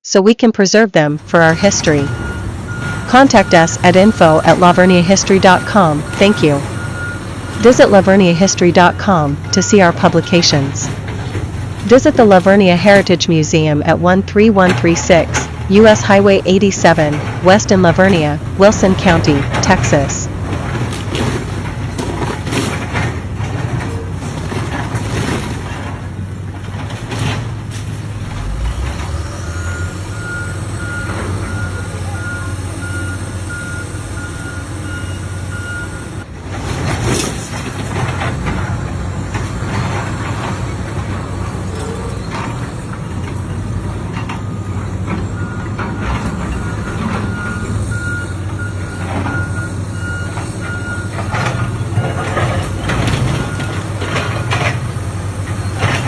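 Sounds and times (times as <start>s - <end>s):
machinery engine rumble: 0.2s - 56.0s
reversing alarm beeping: 1.0s - 11.0s, 28.4s - 36.2s, 44.2s - 52.3s, 53.2s - 54.7s.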